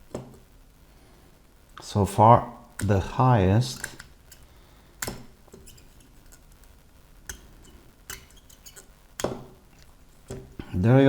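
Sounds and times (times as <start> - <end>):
metal tools clinking on circuit board: 7.3 - 9.3.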